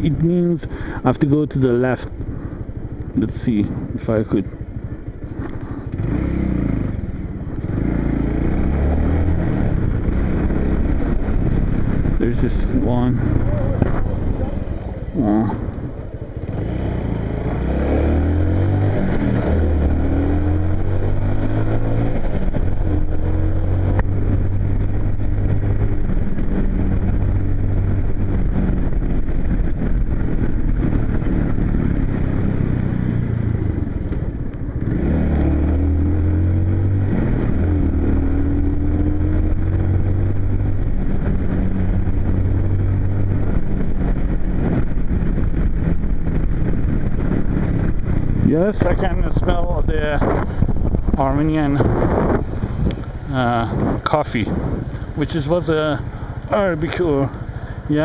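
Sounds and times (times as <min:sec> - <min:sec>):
motorcycle accelerating through gears: 0:00.0 - 0:58.0
wind rush: 0:39.5 - 0:56.6.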